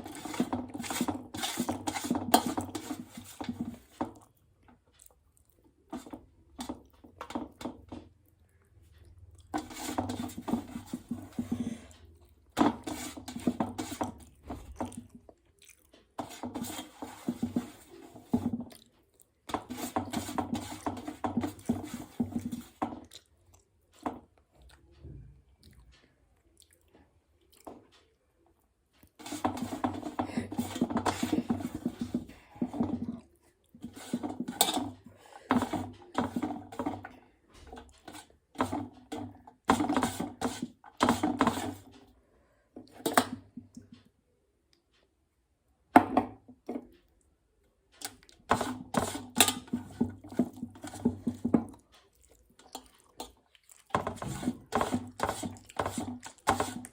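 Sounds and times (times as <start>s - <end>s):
person chewing food: 0.0s - 19.6s, 21.4s - 33.8s, 46.9s - 48.5s, 49.8s - 56.9s.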